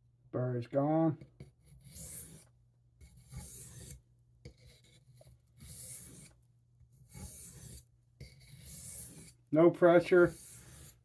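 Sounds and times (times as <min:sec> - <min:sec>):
knife blade scraping on whetstone: 0:01.7 - 0:06.4, 0:07.1 - 0:09.4, 0:10.0 - 0:11.0.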